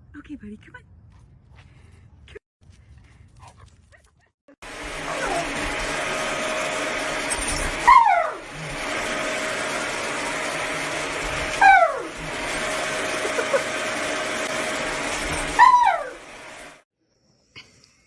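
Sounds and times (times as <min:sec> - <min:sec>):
dog whining: 0:05.0 - 0:05.7, 0:07.5 - 0:08.8, 0:11.5 - 0:12.4, 0:15.3 - 0:16.2.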